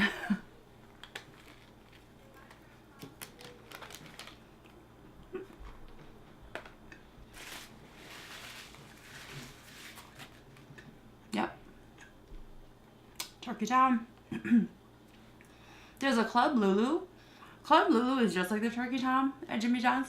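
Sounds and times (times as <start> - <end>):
person chewing a sandwich: 0.8 - 6.3.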